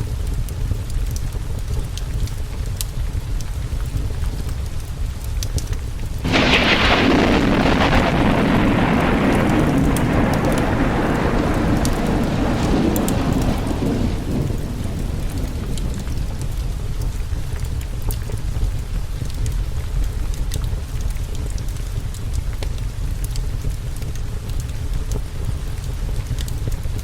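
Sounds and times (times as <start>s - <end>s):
steady rain: 0.0s - 27.0s
low thunder rumble: 6.1s - 26.2s
loud thunderclap: 6.2s - 18.4s.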